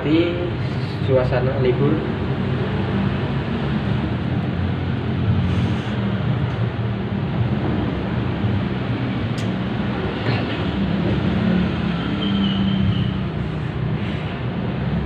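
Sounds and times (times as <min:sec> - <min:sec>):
low rumbling hum: 0:00.0 - 0:11.4.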